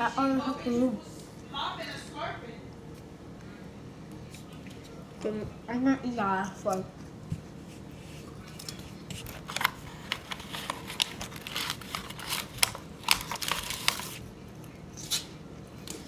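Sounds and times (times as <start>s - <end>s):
plastic packet crinkling: 9.2s - 14.3s.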